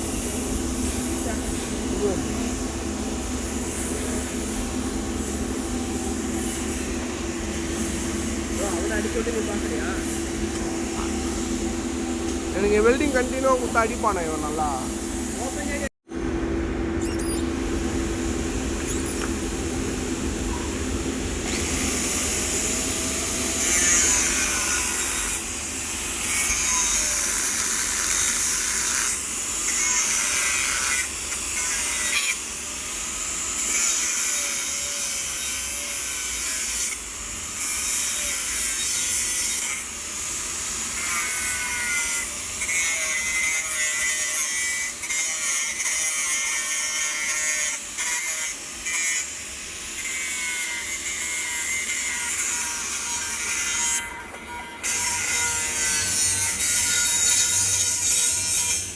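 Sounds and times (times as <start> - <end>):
welding arc hissing: 0.0 - 15.9, 21.2 - 58.9.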